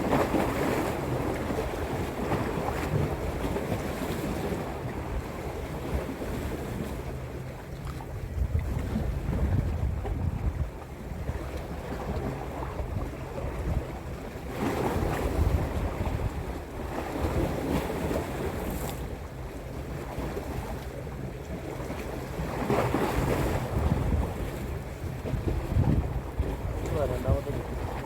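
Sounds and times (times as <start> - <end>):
waves washing onto beach: 0.0 - 7.2, 21.7 - 28.0
wind rumbling on microphone: 7.8 - 19.2, 19.9 - 28.0.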